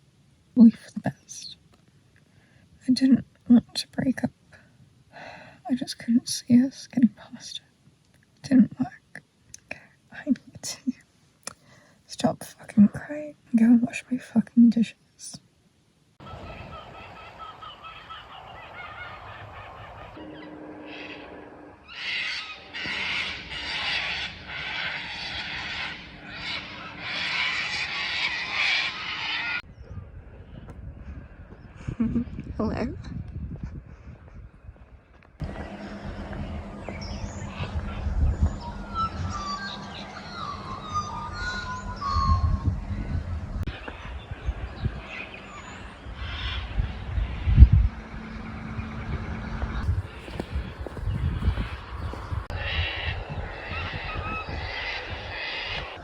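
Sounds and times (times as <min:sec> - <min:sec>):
bird rasping cries: 0:16.2 - 0:29.6, 0:45.4 - 0:47.0, 0:49.9 - 0:56.0
low rumbling: 0:16.2 - 0:56.0.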